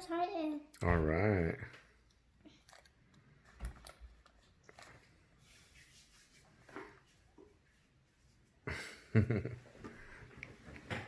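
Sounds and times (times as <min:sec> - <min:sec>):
faint rustling and handling: 0:01.7 - 0:08.6.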